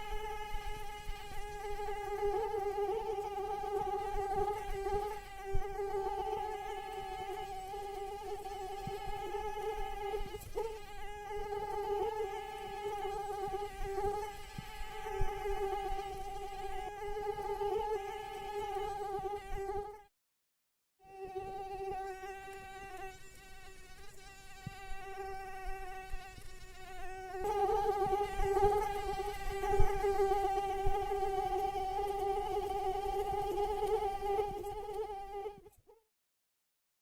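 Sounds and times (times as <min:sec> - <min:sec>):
mosquito buzzing: 0:00.0 - 0:20.1, 0:21.0 - 0:36.0.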